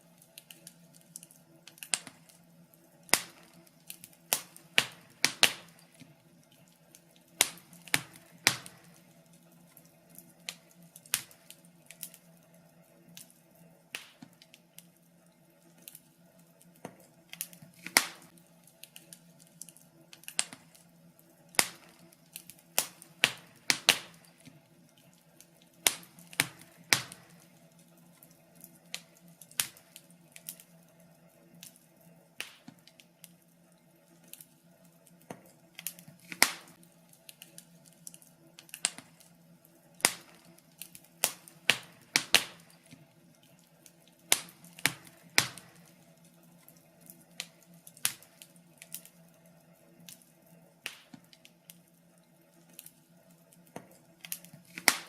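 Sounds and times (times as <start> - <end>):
wood fire crackling: 0.0 - 55.0.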